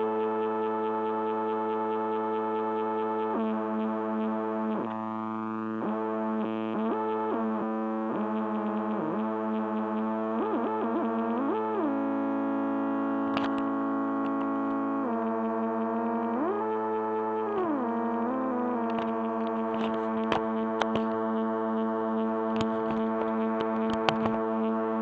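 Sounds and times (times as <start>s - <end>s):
distorted synthesizer drone: 2.2s - 21.5s.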